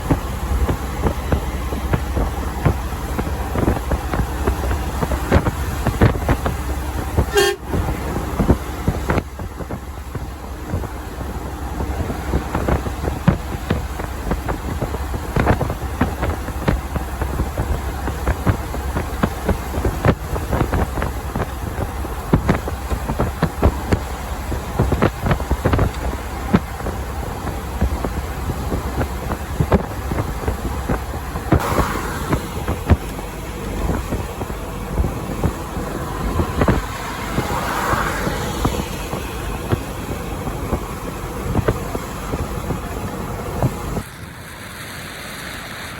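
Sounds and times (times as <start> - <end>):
knocks and rattles in cab: 0.0 - 44.0
truck engine and road drone: 0.0 - 45.9
rushing swells: 31.6 - 45.9.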